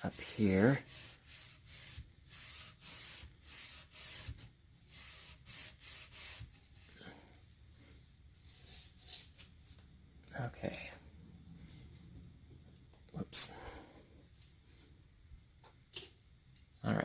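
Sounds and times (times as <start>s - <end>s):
pad wiping a surface: 0.0s - 6.9s.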